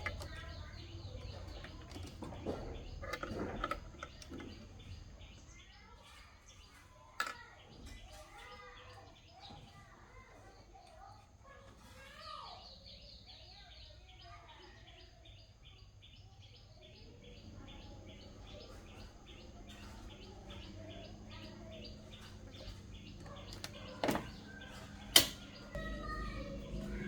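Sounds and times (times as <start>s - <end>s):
bird chirping: 0.0s - 27.0s
faint low hum: 15.2s - 27.0s
sharp click: 25.1s - 25.6s.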